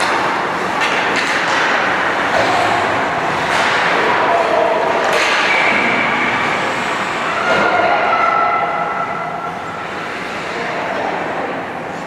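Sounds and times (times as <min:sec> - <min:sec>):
hockey sticks and puck knocking: 0:00.0 - 0:02.7, 0:03.4 - 0:05.8
skates and arena noise: 0:00.0 - 0:12.0
people shouting: 0:07.2 - 0:09.4.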